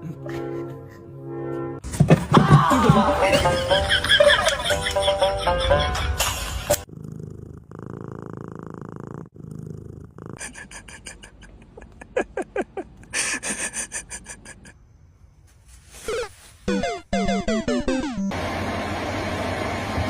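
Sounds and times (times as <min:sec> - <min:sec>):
cat purring: 0:06.8 - 0:10.6.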